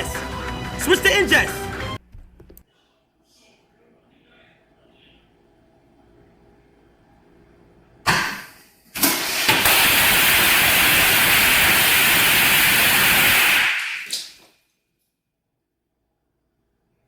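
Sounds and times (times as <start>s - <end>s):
firework bursts: 9.0s - 14.1s
firework hissing: 9.0s - 14.1s.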